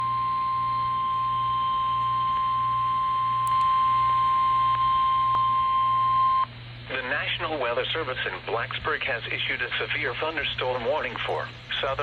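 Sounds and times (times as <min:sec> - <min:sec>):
low hum: 0:00.0 - 0:07.0.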